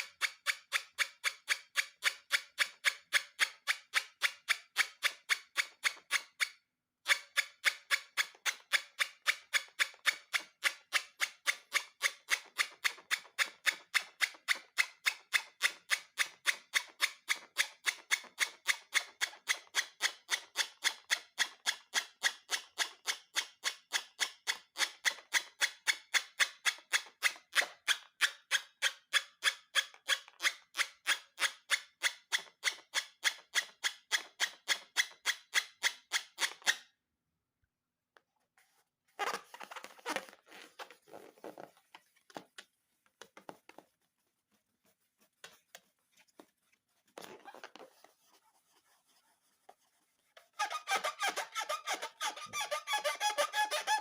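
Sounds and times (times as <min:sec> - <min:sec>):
rustling and crinkling: 0:38.4 - 0:50.6.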